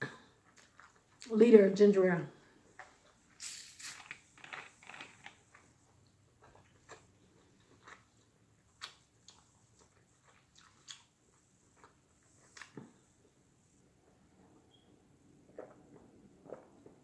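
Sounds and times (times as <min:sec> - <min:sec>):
person chewing food: 0:00.1 - 0:01.3, 0:02.6 - 0:13.4, 0:15.4 - 0:17.0.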